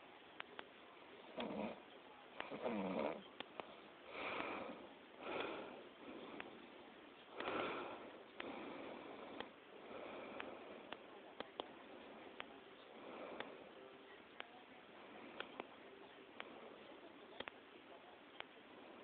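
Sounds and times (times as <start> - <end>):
person snoring: 2.5 - 3.2.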